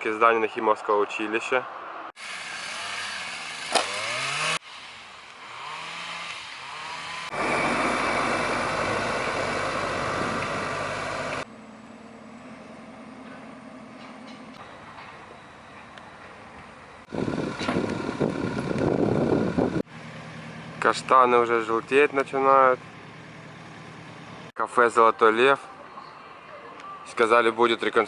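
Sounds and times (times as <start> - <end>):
vehicles passing: 0.0 - 28.0
car engines running: 5.4 - 14.8, 17.0 - 24.5.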